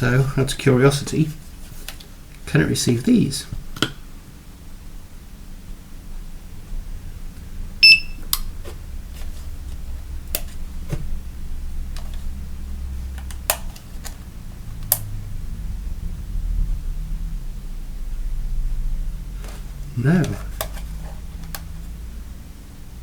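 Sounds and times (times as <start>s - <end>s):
short electronic beep: 7.8s - 8.2s.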